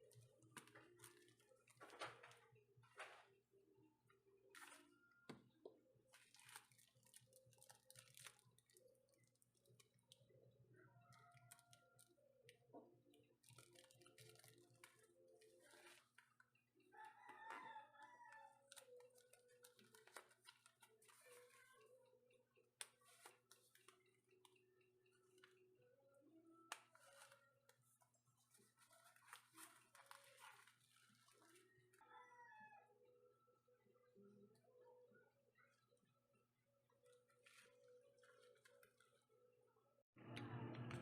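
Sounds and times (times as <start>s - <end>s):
distant rooster crowing: 17.0s - 18.6s, 32.0s - 33.0s.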